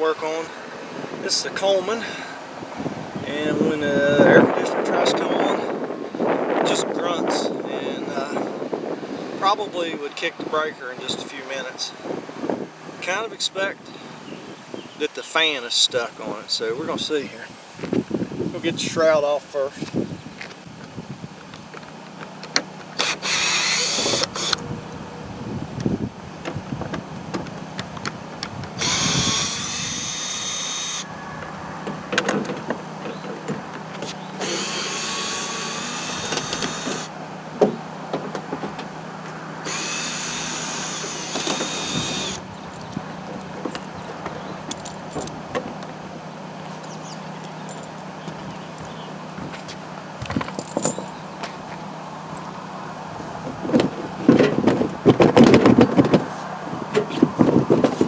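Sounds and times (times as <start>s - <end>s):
cordless drill backing out screws: 23.0s - 24.6s, 28.8s - 31.0s, 34.4s - 37.1s, 39.6s - 43.0s
clicks and knocks handling screws: 44.7s - 45.4s, 50.2s - 51.2s.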